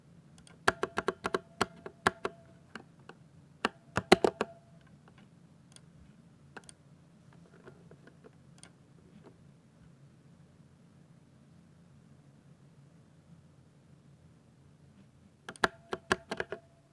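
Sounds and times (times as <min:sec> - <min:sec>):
mechanical keyboard typing: 0:00.4 - 0:02.4, 0:03.6 - 0:04.6, 0:15.5 - 0:16.6.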